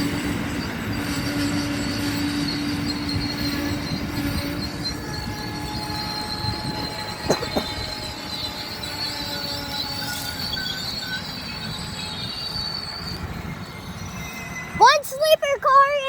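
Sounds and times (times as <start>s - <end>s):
high-pitched wheel squeal: 0.0s - 15.4s
train cars rumbling past: 0.0s - 16.0s
sharp clanks: 7.2s - 7.8s.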